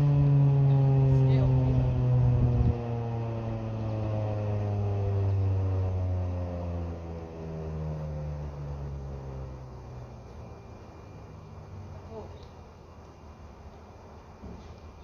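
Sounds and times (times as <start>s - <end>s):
rotating siren winding down: 0.0s - 12.0s.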